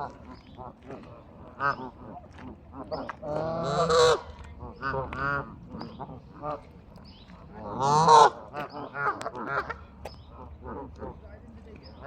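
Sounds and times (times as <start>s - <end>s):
geese honking: 1.6s - 6.6s, 7.6s - 10.9s.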